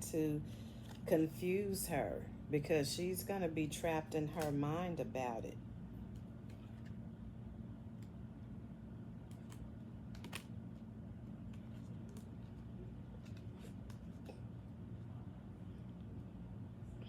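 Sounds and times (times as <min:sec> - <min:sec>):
steady low hum: 0:00.0 - 0:17.0
cards clicking and flicking: 0:09.2 - 0:10.8.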